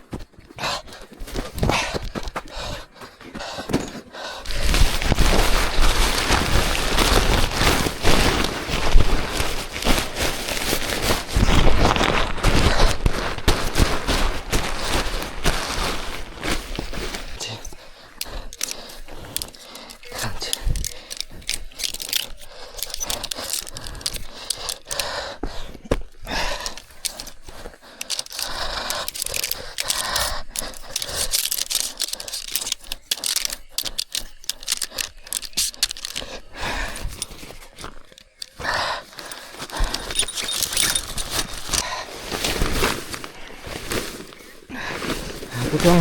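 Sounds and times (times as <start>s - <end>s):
fishing gear clicks and knocks: 0.0s - 46.0s
rustling and crackling handling noise: 0.0s - 46.0s.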